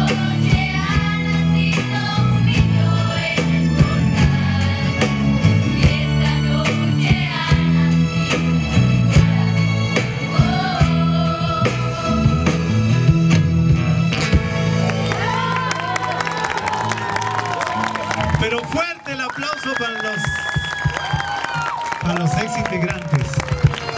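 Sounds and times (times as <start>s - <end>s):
steady drum beat: 0.0s - 14.8s, 20.3s - 21.8s
live band playing: 0.0s - 18.6s, 20.5s - 23.9s.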